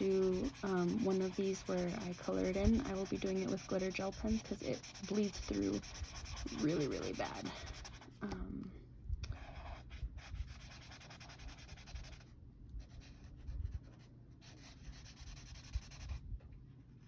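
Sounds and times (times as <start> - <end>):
pen scratching on paper: 0.0 - 8.1, 9.4 - 12.2, 14.4 - 16.2.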